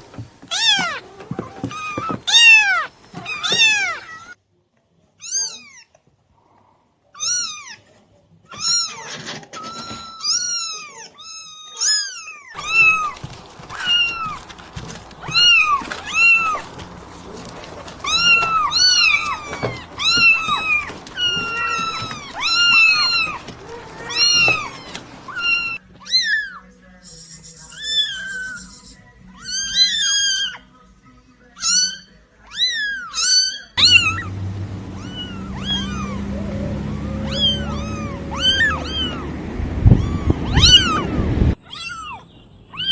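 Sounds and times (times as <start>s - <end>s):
kittens meowing: 0.5s - 4.4s, 7.2s - 7.8s, 8.5s - 26.7s, 27.6s - 30.7s, 31.6s - 42.9s.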